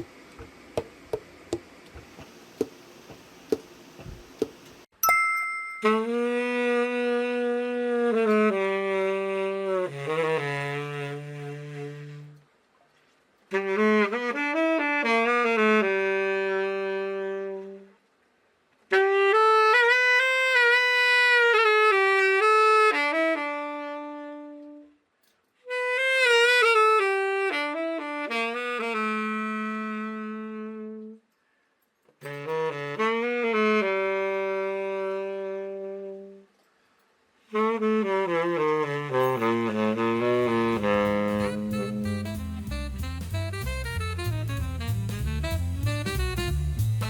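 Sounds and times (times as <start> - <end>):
tenor saxophone playing: 5.8 - 12.5, 13.5 - 18.0, 18.9 - 31.3, 32.2 - 36.6, 37.4 - 47.0.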